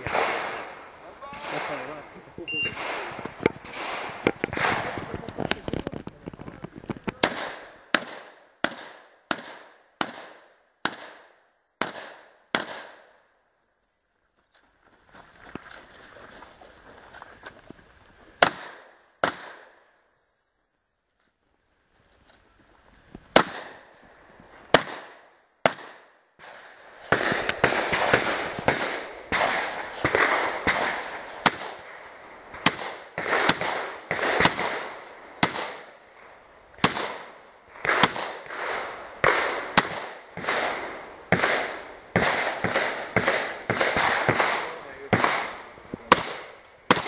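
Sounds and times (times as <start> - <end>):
shotgun shots with echo: 0.0 - 0.8, 1.4 - 2.0, 2.7 - 5.3, 7.2 - 13.1, 18.4 - 19.8, 23.3 - 23.9, 24.7 - 35.9, 36.8 - 47.0.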